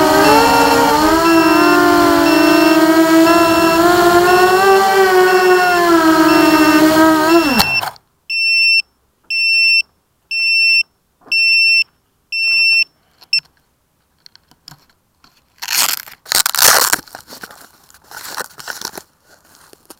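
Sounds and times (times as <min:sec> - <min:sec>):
high electronic beeps: 0:00.0 - 0:04.7
drone motors winding down: 0:00.0 - 0:07.9
rustling crunching noise: 0:15.3 - 0:19.9.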